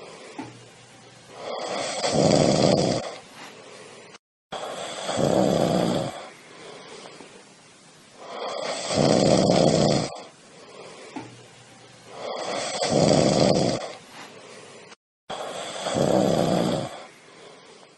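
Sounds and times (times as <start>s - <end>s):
cat snoring: 1.3s - 7.4s, 8.2s - 11.3s, 12.1s - 17.9s
cat breathing: 1.3s - 7.5s, 9.7s - 11.3s, 12.1s - 17.9s.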